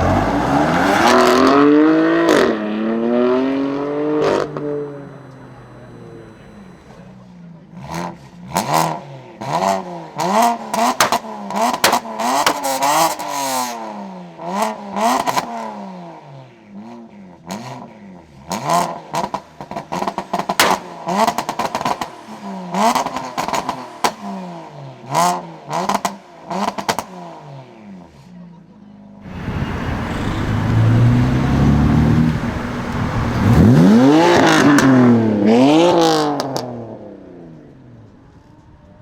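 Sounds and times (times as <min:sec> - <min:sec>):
car engine revving: 0:00.0 - 0:16.2, 0:29.2 - 0:37.7
exhaust pops and crackles: 0:10.7 - 0:13.2, 0:19.4 - 0:22.2, 0:29.3 - 0:34.9.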